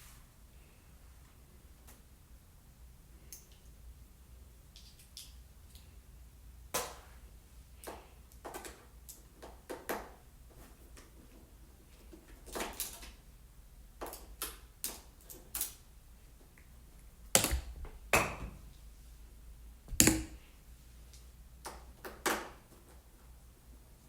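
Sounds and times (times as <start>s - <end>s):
tools clicking and knocking: 19.9s - 20.4s.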